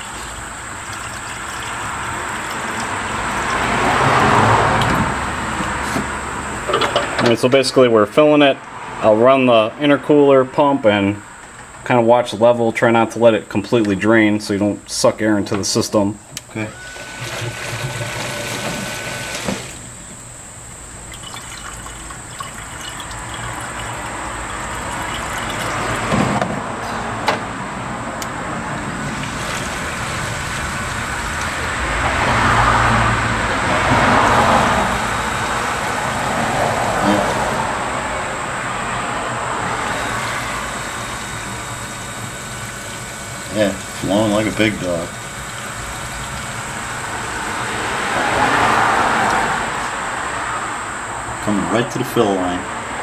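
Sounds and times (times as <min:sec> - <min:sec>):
liquid pouring and gurgling: 0:00.0 - 0:05.5, 0:20.8 - 0:26.4, 0:28.9 - 0:32.5, 0:39.5 - 0:47.8
electric pump humming: 0:00.0 - 0:09.0, 0:10.0 - 0:53.0.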